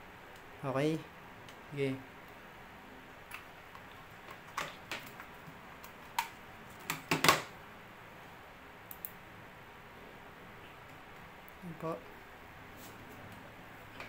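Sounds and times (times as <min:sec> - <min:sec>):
cable plugs clicking and knocking: 0:03.3 - 0:07.5.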